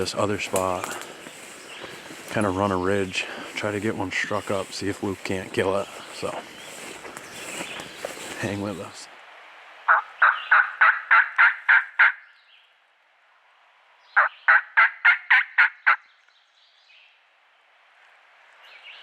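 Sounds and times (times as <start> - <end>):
turkey call yelps: 9.9 - 12.2, 14.2 - 16.0.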